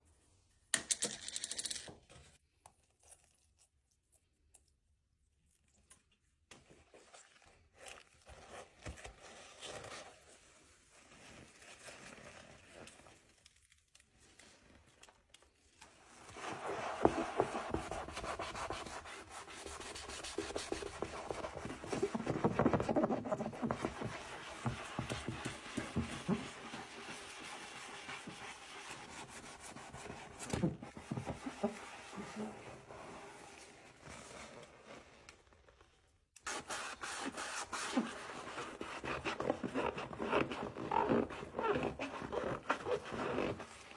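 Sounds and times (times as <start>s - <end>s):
sponge scrubbing a sink: 16.0s - 35.2s, 36.5s - 43.9s.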